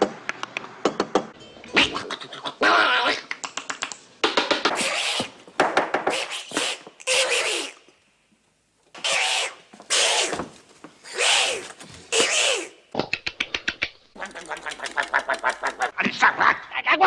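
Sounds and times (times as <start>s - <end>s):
man's vocal clicks and sputtering: 3.2s - 5.4s, 6.0s - 7.9s, 11.1s - 16.0s
man making hissing outbursts: 4.7s - 5.4s, 6.1s - 7.8s, 9.0s - 10.4s, 11.0s - 12.9s.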